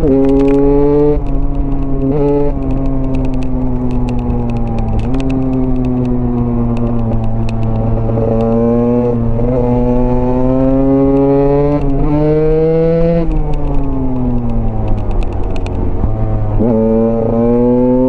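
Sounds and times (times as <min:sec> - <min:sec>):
motorcycle engine running: 0:00.0 - 0:18.0.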